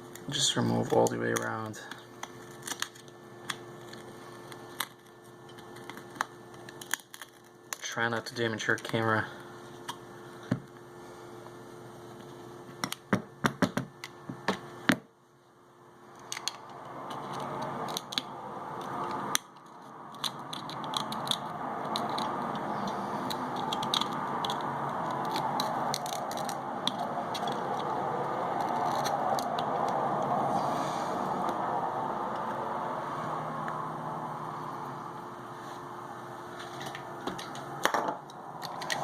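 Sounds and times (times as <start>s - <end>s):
steady rushing noise: 16.9s - 35.5s.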